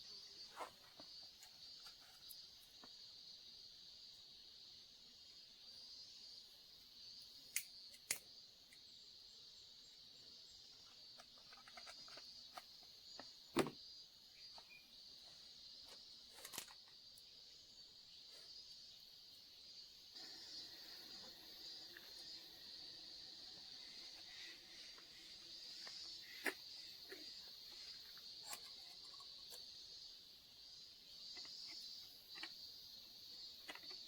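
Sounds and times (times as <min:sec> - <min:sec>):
high-pitched insect drone: 0:18.6 - 0:34.0.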